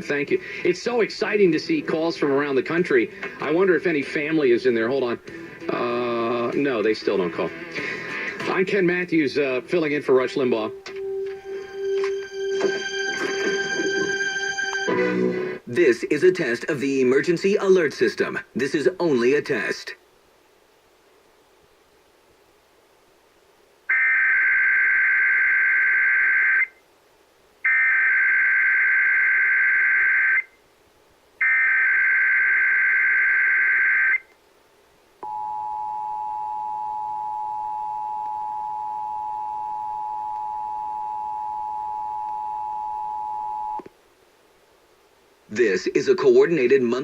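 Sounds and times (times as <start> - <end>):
two-tone attention signal: 10.7 - 15.6, 35.2 - 43.8.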